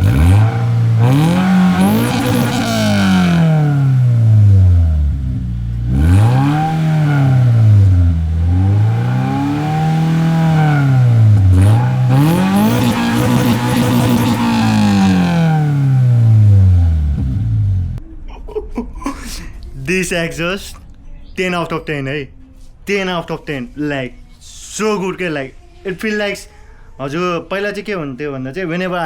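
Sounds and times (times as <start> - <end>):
car engine revving: 0.0 - 18.0.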